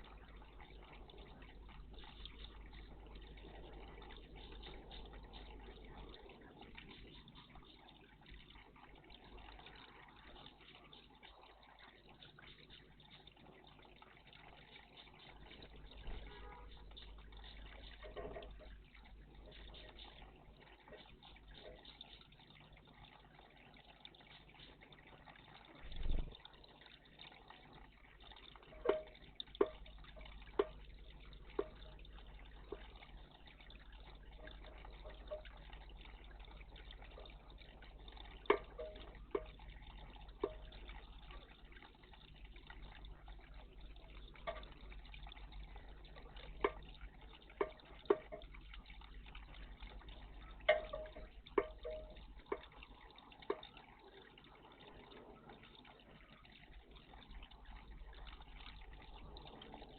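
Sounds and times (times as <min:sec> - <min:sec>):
water dripping and splashing: 0:00.0 - 0:59.9.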